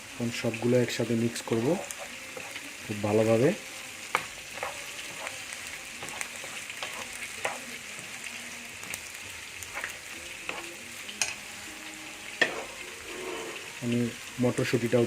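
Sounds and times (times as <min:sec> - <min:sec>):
vegetables sizzling in a pan: 0:00.0 - 0:15.0
utensil scraping and knocking pan: 0:12.4 - 0:13.8.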